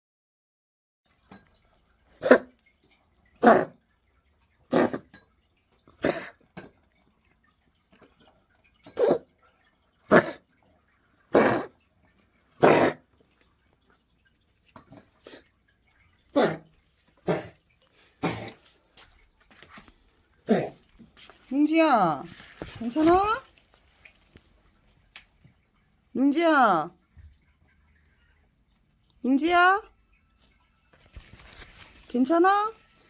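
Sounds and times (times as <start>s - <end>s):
cat coughing: 2.2s - 2.5s, 3.4s - 3.8s, 4.7s - 5.1s, 6.0s - 6.4s, 9.0s - 9.2s, 10.1s - 10.4s, 11.3s - 11.7s, 12.6s - 13.0s, 16.3s - 17.6s, 18.2s - 18.6s, 20.5s - 20.8s.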